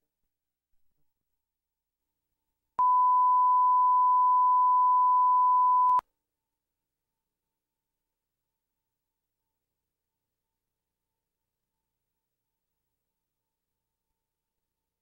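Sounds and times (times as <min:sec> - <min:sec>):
steady electronic beep tone: 0:02.8 - 0:06.0.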